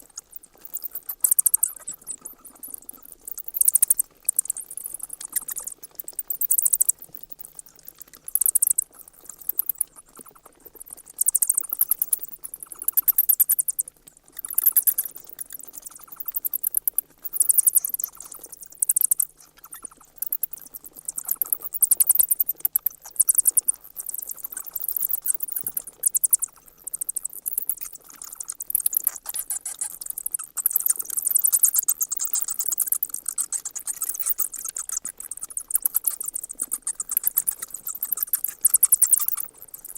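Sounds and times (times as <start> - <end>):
bats chittering: 24.5 - 39.9.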